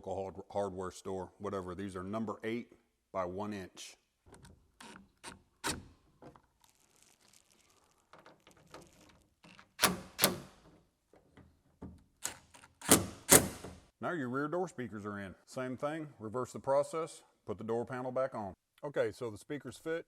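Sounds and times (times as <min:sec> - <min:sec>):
tools clicking on sheet metal: 0:04.4 - 0:06.3, 0:08.1 - 0:13.8.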